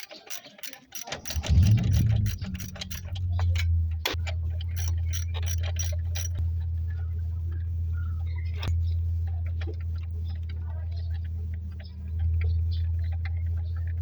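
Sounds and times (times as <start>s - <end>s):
ratchet wrench clicking: 0.0s - 6.4s
steady low hum: 0.0s - 14.0s.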